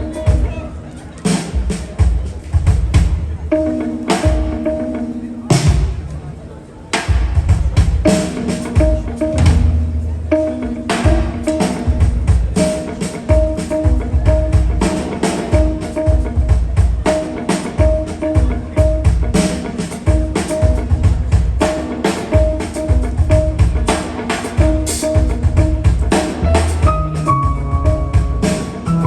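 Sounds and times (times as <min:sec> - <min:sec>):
busy drumming: 0:00.0 - 0:29.0
bass: 0:08.8 - 0:12.8, 0:24.6 - 0:29.0
piano: 0:22.7 - 0:29.0.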